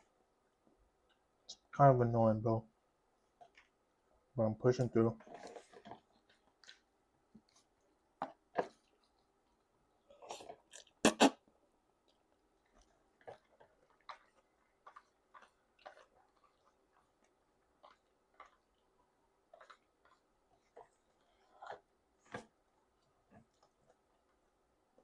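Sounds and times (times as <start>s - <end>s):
chewing noodles with mouth clicks: 12.0s - 22.0s.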